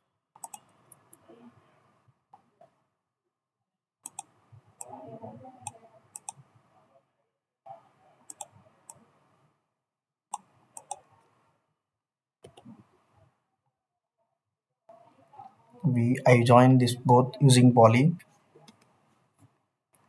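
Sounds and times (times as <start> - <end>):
computer mouse clicking: 0.4 - 1.3, 4.0 - 5.0, 5.6 - 6.5, 8.3 - 9.0, 10.3 - 11.2, 12.4 - 12.9, 18.6 - 18.9.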